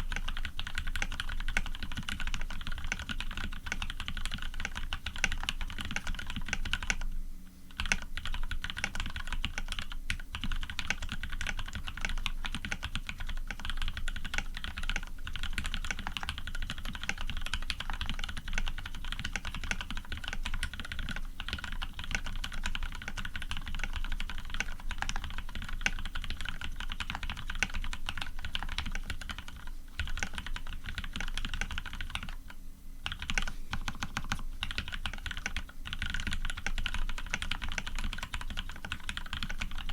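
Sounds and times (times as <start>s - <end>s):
rapid mechanical keyboard typing: 0.0s - 7.1s, 7.8s - 39.9s.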